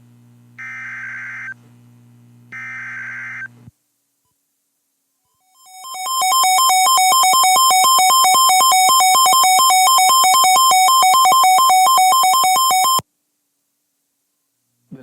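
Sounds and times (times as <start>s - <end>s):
two-pitch emergency alert tone: 5.5s - 13.0s.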